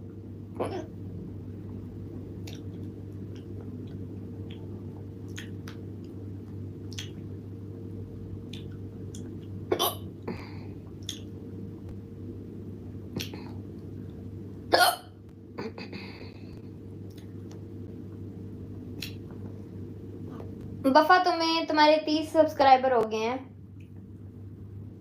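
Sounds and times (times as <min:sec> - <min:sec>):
steady low hum: 0:00.0 - 0:25.0
woman hiccuping: 0:14.7 - 0:15.9.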